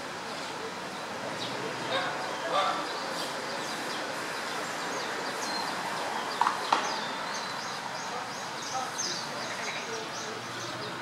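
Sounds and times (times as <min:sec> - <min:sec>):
small birds chirping: 0:00.3 - 0:11.0.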